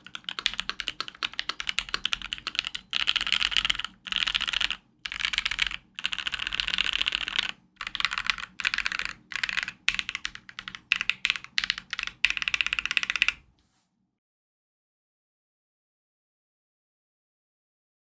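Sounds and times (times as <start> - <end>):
mechanical keyboard typing: 0.0 - 13.4.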